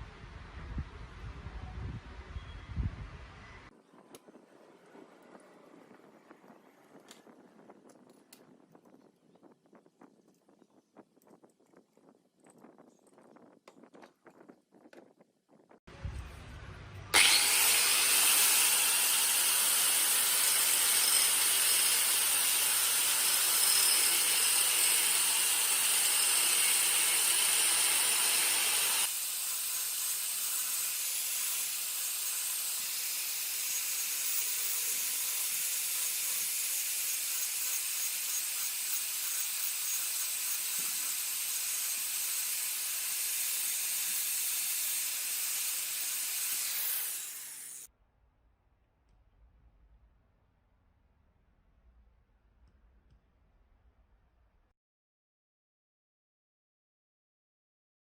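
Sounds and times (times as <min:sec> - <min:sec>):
power tool hiss and whine: 0:17.2 - 0:47.9.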